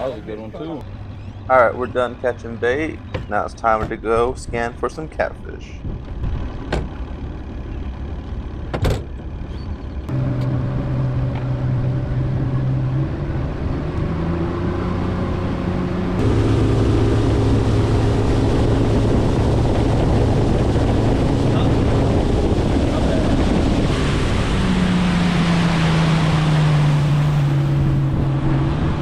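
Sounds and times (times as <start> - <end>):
boat motor running: 5.8 - 29.0
rushing water noise: 16.2 - 29.0.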